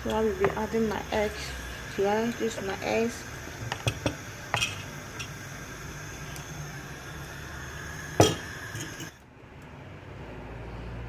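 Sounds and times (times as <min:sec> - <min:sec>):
dishes and utensils clinking: 0:03.7 - 0:05.3, 0:08.2 - 0:09.2.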